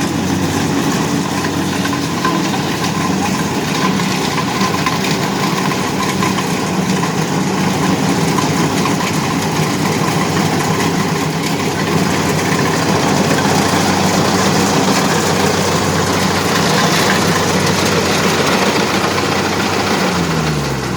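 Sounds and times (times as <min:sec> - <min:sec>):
engine running steadily: 0:00.0 - 0:20.9.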